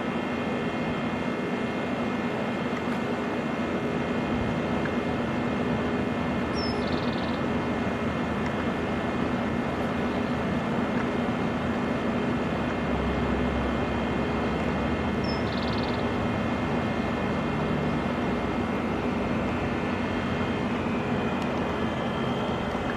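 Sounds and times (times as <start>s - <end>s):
mechanical drone humming: 0.0s - 22.9s.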